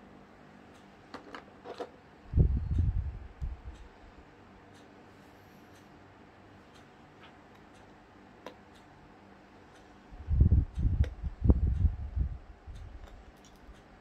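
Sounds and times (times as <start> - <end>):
small clicks: 12.8 - 13.9.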